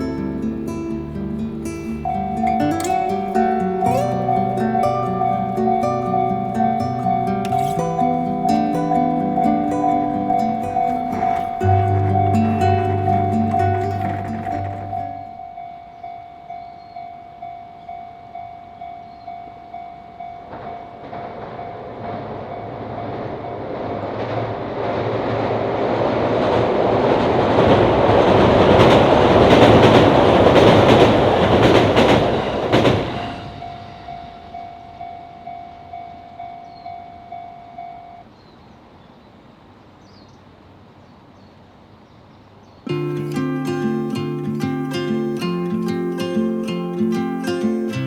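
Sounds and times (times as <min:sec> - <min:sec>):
train rumble: 0:00.0 - 0:15.4, 0:20.4 - 0:36.4
wheels clacking over rail joints: 0:00.0 - 0:15.4, 0:27.0 - 0:33.7
level crossing electronic bell: 0:00.0 - 0:15.6.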